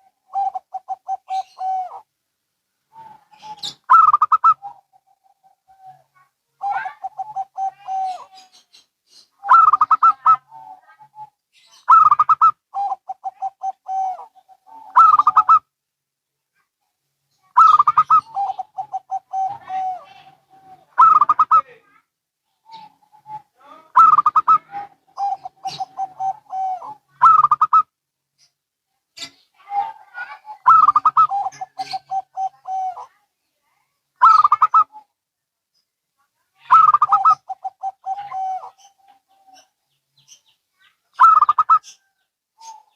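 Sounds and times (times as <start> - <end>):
doves cooing: 0.0 - 2.1, 2.9 - 15.7, 17.5 - 21.8, 22.6 - 27.9, 29.2 - 33.1, 34.2 - 35.1, 36.7 - 39.7, 41.2 - 42.9.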